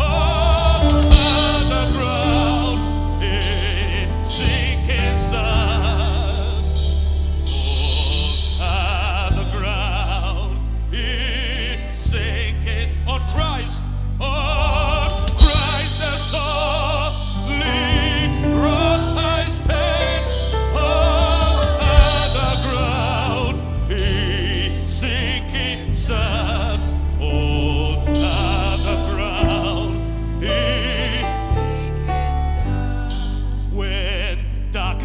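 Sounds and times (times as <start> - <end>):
heavy bass line: 0.0 - 35.0
keyboard: 0.0 - 35.0
voices singing a hymn: 0.0 - 35.0
sharp percussive hits: 0.6 - 11.4.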